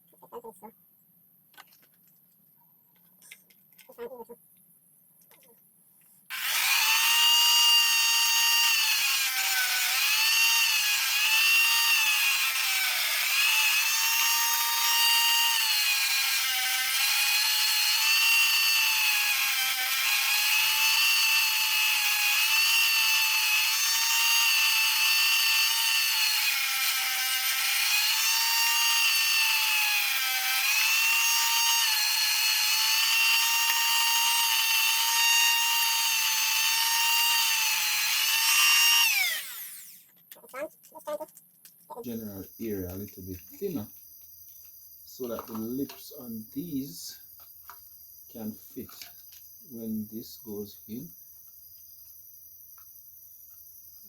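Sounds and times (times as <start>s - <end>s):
rotary tool sanding plastic: 6.3s - 41.4s.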